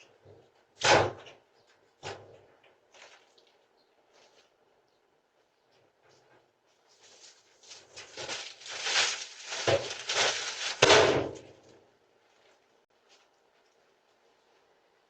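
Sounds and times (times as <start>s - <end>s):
scraping and clattering: 7.1s - 11.1s.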